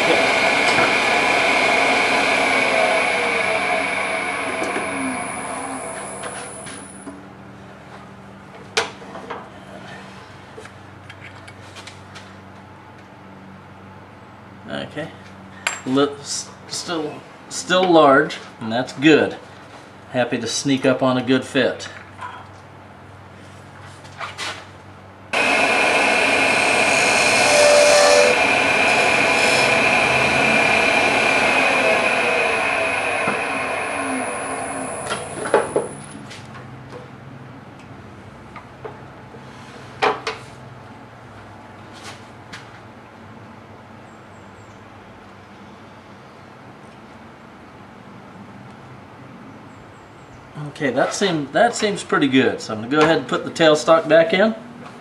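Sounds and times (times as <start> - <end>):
wood lathe turning: 0.0 - 7.1, 25.4 - 36.1
steady low hum: 0.0 - 8.3, 24.9 - 36.3.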